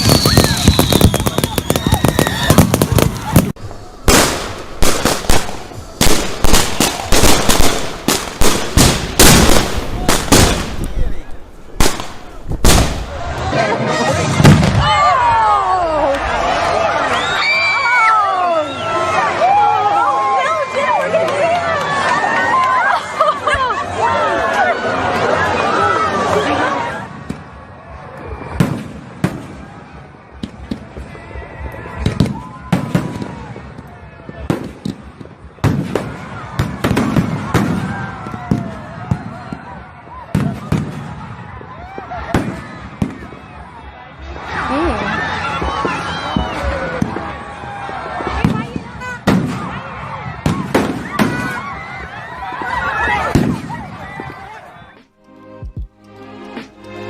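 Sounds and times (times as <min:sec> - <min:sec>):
small firework pops: 0:00.0 - 0:11.0
fireworks bangs: 0:00.0 - 0:13.4, 0:32.0 - 0:41.3, 0:48.2 - 0:49.8, 0:50.4 - 0:51.7, 0:52.6 - 0:57.0.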